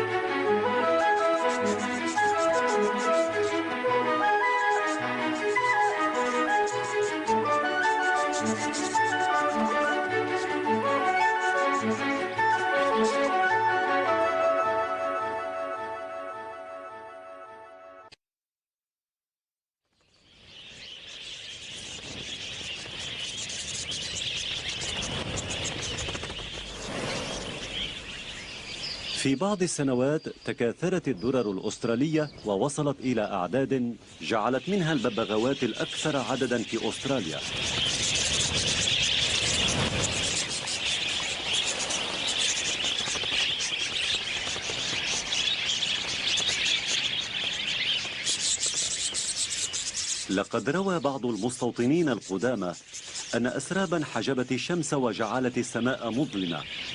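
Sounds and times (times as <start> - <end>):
flock of budgerigars chattering: 1.0 - 3.7, 4.3 - 13.7, 20.3 - 56.9.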